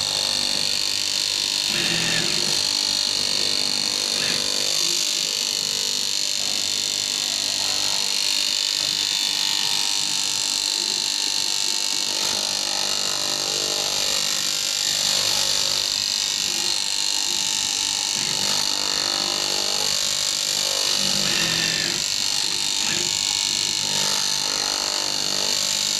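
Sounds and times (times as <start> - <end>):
cutting machine whine: 0.0 - 25.9.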